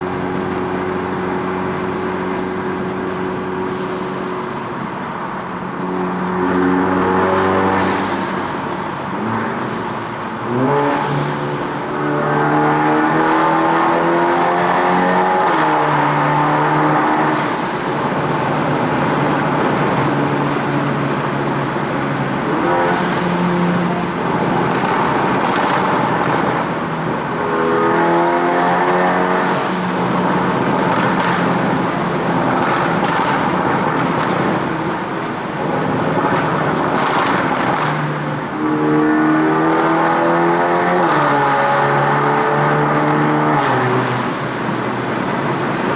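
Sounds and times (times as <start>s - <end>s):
car engine revving: 0.0s - 45.9s
exhaust pops and crackles: 24.7s - 26.5s, 30.7s - 31.6s, 32.5s - 35.0s, 36.0s - 38.2s.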